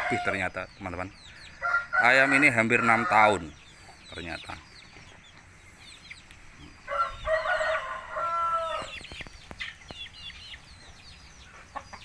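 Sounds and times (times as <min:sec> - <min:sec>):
rooster crowing: 0:00.0 - 0:00.3, 0:01.6 - 0:03.4, 0:06.9 - 0:09.0
chickens cheeping: 0:00.0 - 0:12.0.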